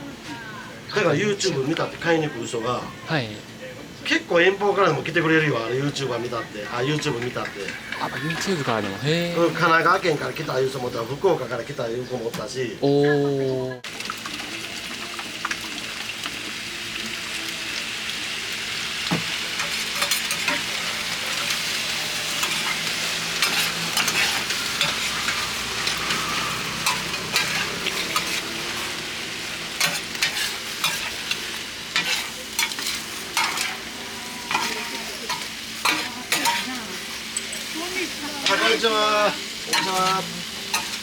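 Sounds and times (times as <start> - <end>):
meat sizzling on griddle: 4.1 - 12.3, 13.8 - 41.0
metal spatulas scraping: 21.3 - 28.9, 29.8 - 36.8, 39.7 - 41.0.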